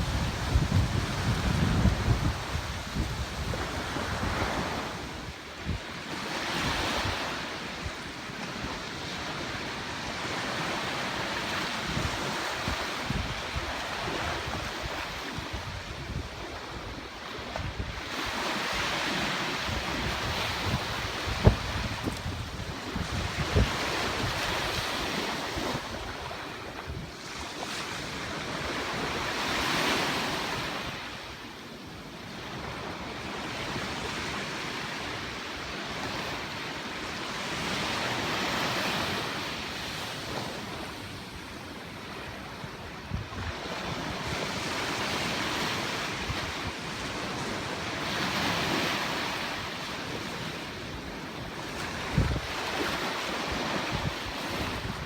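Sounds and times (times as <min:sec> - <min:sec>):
wind buffeting microphone: 0:00.0 - 0:07.9, 0:09.4 - 0:31.1, 0:51.4 - 0:55.0.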